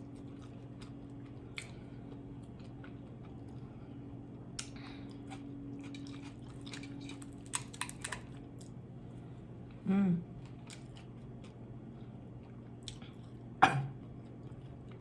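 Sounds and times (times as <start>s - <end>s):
person chewing: 0.0s - 3.8s, 4.6s - 8.8s, 12.4s - 15.0s
steady low hum: 0.0s - 15.0s.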